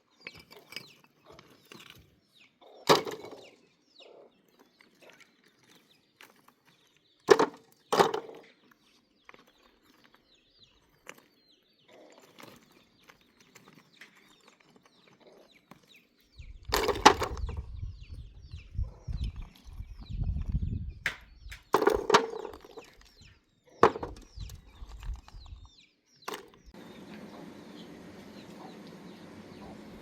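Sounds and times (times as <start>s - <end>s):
small bird chirping: 0.0s - 7.2s, 7.8s - 30.0s.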